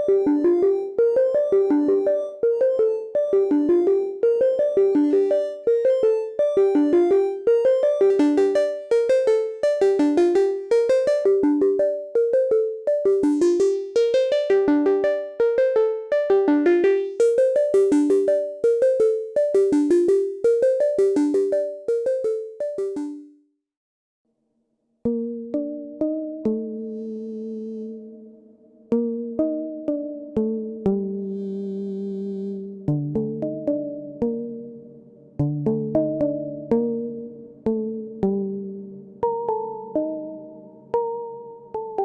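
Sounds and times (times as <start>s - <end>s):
synthesizer plucked notes pattern: 0.0s - 23.3s, 32.9s - 42.0s.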